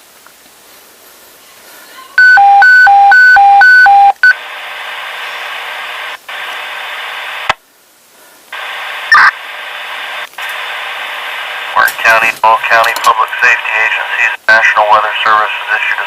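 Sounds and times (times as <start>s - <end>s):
radio transmission hiss: 4.2s - 16.0s.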